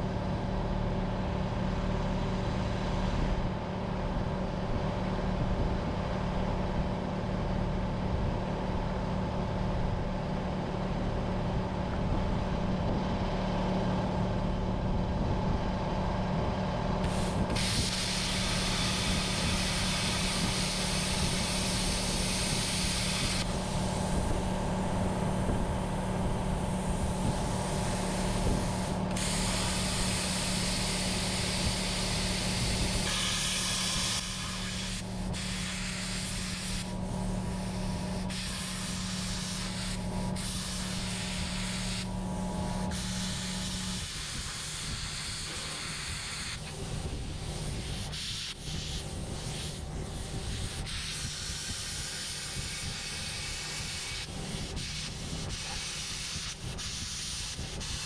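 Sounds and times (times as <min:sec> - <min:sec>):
engine humming: 0:00.0 - 0:44.0
loud steady hiss: 0:16.9 - 0:58.0.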